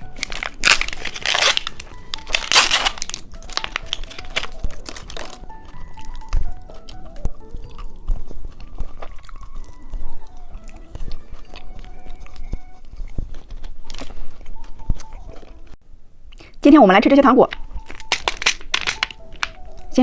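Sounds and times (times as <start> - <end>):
chewing gummy candy: 0.0 - 15.6.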